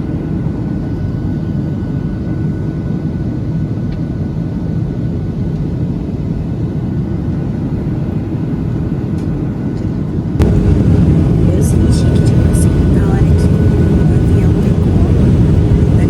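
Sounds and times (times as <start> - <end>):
airliner cabin engine rumble: 0.0 - 16.0
faint steady whine: 10.4 - 16.0.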